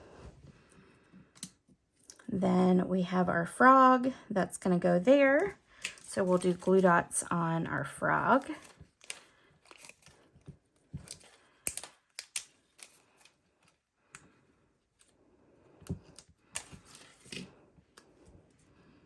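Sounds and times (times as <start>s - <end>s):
paper rustling: 8.4s - 13.8s, 16.6s - 17.6s.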